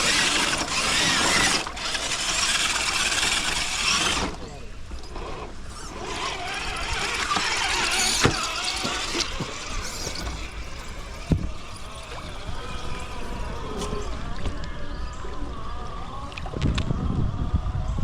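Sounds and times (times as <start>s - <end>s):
small electric motor whining: 0.0s - 18.0s
water trickling over stones: 5.8s - 14.5s.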